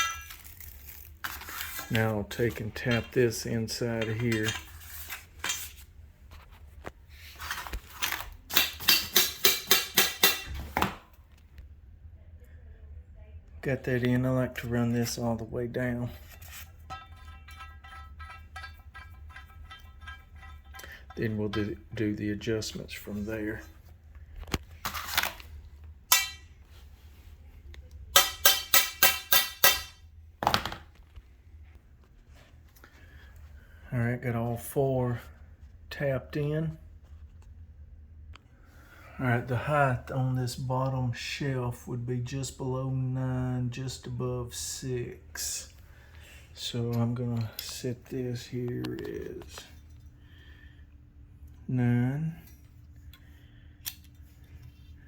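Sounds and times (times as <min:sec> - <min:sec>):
taps on steel poles ringing: 0:08.6 - 0:10.6, 0:16.9 - 0:21.0, 0:28.2 - 0:30.0.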